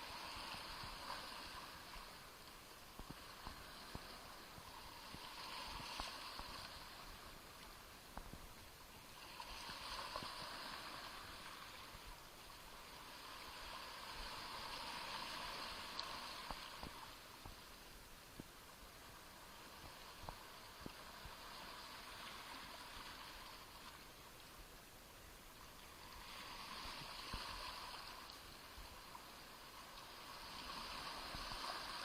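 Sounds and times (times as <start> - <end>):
small waves washing onto shore: 0.0 - 32.0
faint ticks: 0.3 - 10.6, 15.6 - 21.4.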